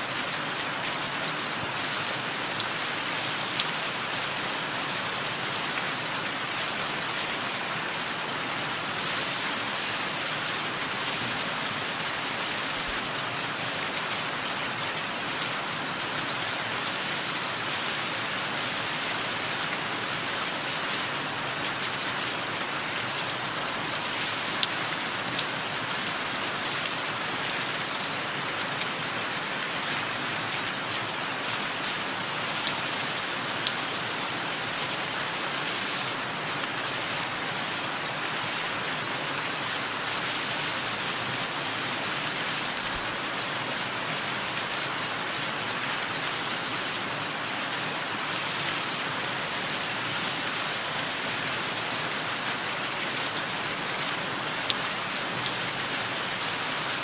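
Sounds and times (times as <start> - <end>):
steady rain: 0.0 - 57.0
birds chirping: 4.0 - 4.7, 6.0 - 9.8, 10.9 - 14.2, 18.7 - 19.4, 23.5 - 25.0, 27.2 - 28.6, 31.6 - 32.6, 34.6 - 36.4, 37.4 - 41.5, 45.9 - 47.0, 51.1 - 52.9, 54.7 - 55.9.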